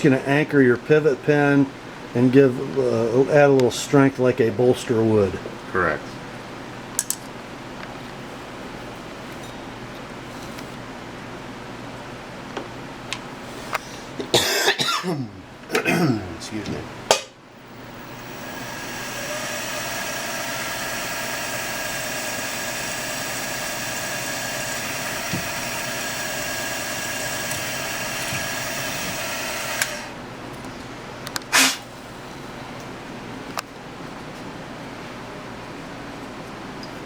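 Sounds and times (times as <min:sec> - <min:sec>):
milling machine spindle motor: 0:17.7 - 0:30.2.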